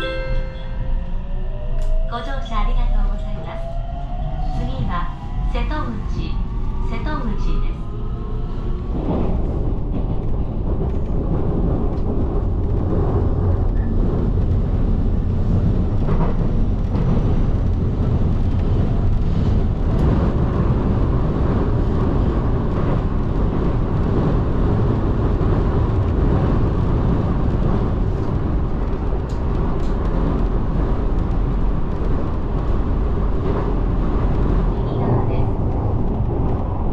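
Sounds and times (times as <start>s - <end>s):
train wheels rumbling on rail: 0.0s - 36.9s.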